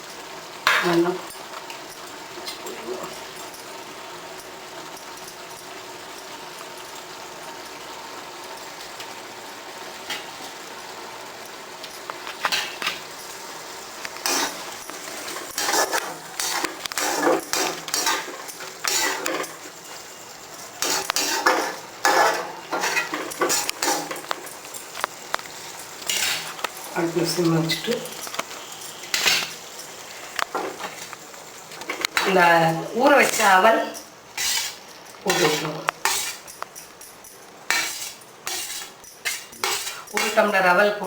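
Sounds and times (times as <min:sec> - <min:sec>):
metal spoon scraping a pot: 0:14.2 - 0:20.0, 0:20.8 - 0:25.0, 0:34.4 - 0:36.7, 0:37.7 - 0:40.5.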